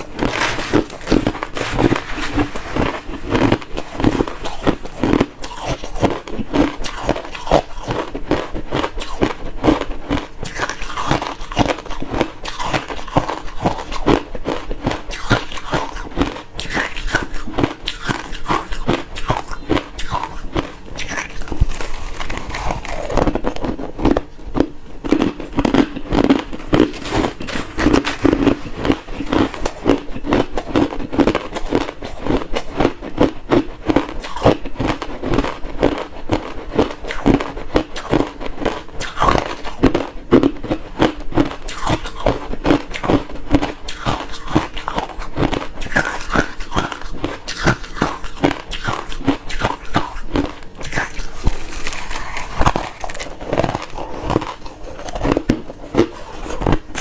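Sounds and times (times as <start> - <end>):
chewing crushed ice: 0.0 - 57.0.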